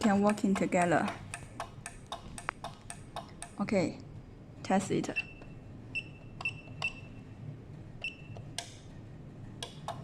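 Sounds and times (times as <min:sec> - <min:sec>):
keypad beeps: 0:05.1 - 0:07.2, 0:08.0 - 0:08.5.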